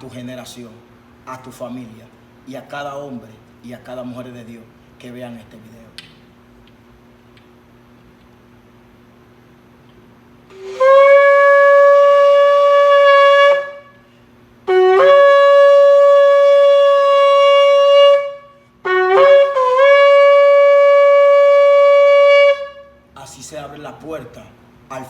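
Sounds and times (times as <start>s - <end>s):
ram's horn blasts: 10.5s - 23.0s.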